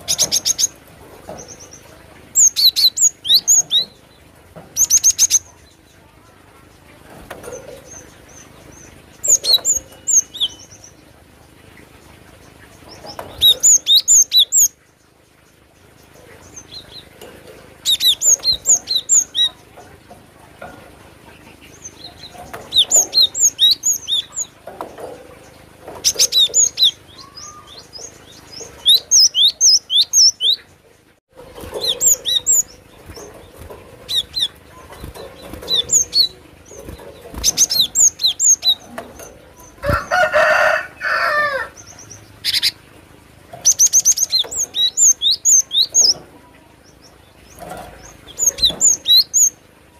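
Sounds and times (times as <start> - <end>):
bird singing high chirps: 26.0 - 30.8.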